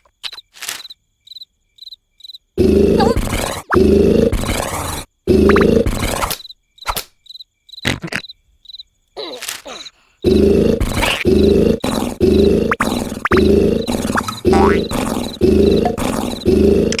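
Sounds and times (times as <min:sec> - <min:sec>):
high cricket chirps: 0:00.0 - 0:17.0
cartoon snoring: 0:02.6 - 0:06.4, 0:10.2 - 0:17.0.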